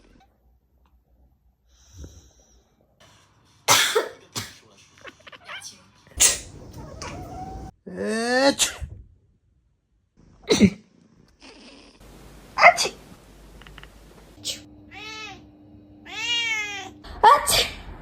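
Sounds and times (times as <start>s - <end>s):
person sneezing: 3.7s - 4.6s, 6.2s - 6.6s
cat meowing: 5.0s - 7.7s, 14.5s - 15.4s, 16.0s - 17.0s.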